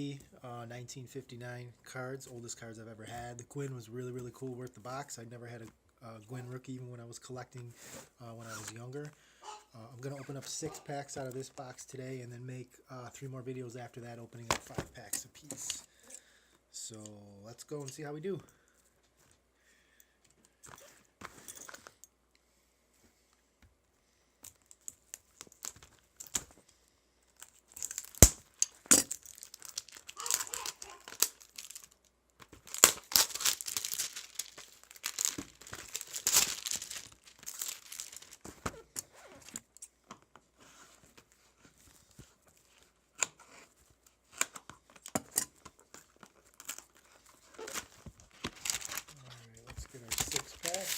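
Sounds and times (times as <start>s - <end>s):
packaging tearing and crinkling: 27.4s - 38.7s, 45.8s - 50.9s.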